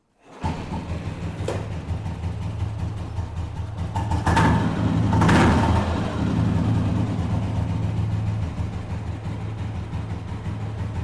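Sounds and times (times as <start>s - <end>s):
motorcycle engine idling: 0.4s - 11.0s.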